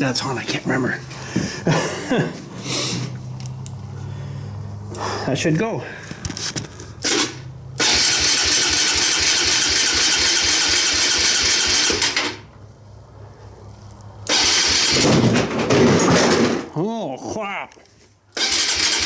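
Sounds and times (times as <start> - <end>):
motorcycle starter cranking engine: 7.0 - 12.5, 14.2 - 15.3, 18.3 - 19.0.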